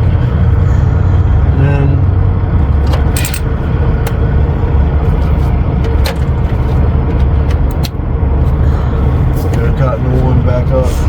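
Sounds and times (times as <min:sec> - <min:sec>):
diesel truck engine idling: 0:00.0 - 0:11.0.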